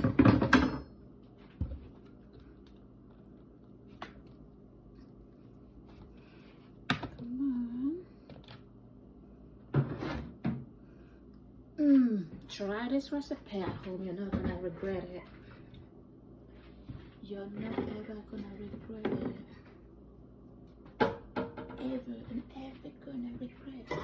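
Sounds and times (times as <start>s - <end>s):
kitchen items clattering: 0.0s - 1.0s, 23.8s - 24.0s
person humming: 7.2s - 8.2s.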